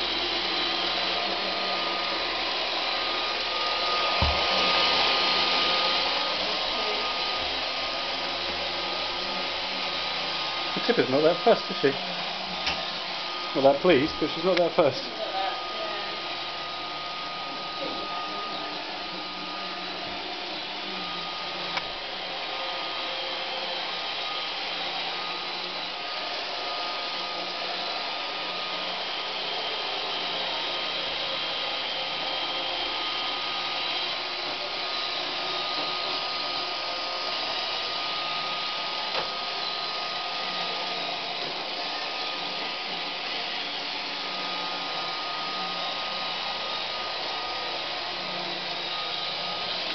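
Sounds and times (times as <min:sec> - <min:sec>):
robot vacuum whirring: 0:00.0 - 0:49.9
robot vacuum bumping knocks: 0:04.2 - 0:04.6.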